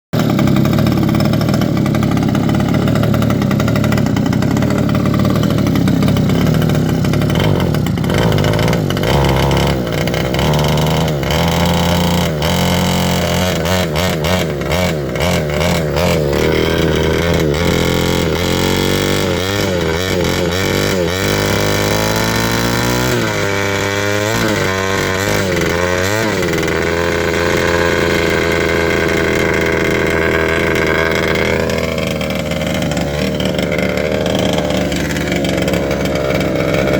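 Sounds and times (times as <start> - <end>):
small engine revving: 0.2 - 36.9.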